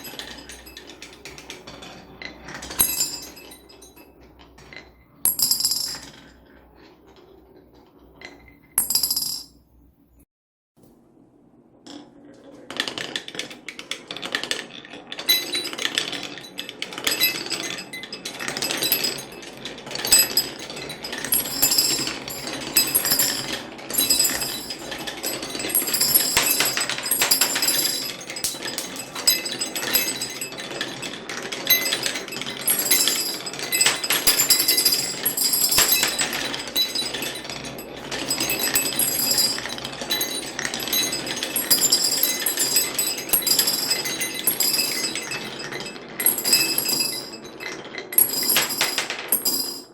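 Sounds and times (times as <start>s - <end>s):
marbles clattering down wooden run: 12.8s - 49.8s
marbles clinking into glass bottle: 15.3s - 49.9s.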